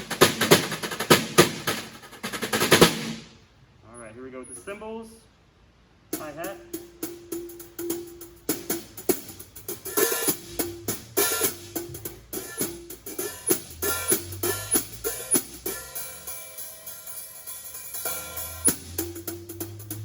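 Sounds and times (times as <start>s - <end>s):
hi-hat tapped with brushes: 0.0s - 3.4s, 6.1s - 20.0s
cymbal ringing: 6.2s - 20.0s.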